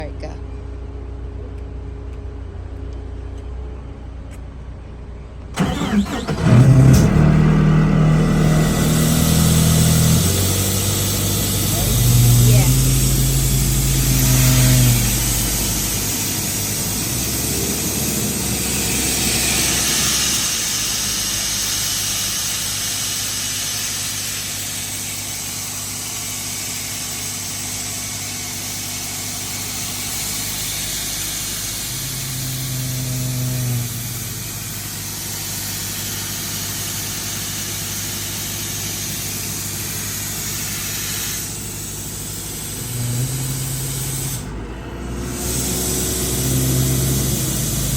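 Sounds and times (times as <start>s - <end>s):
air compressor engine: 5.6s - 47.9s
deeper tone: 6.9s - 21.1s, 29.9s - 35.3s, 42.4s - 47.9s.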